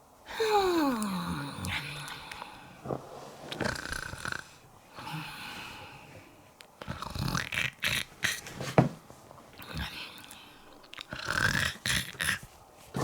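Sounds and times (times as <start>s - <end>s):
comic snoring: 3.5s - 5.5s, 6.8s - 8.6s, 11.1s - 13.0s.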